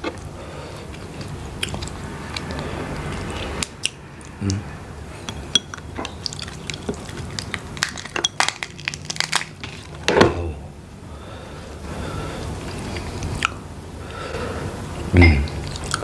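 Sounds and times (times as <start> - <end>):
mouth sound: 4.3 - 4.8, 15.0 - 16.0
crab shell cracking under teeth: 5.8 - 10.0
quiet chewing: 15.4 - 16.0.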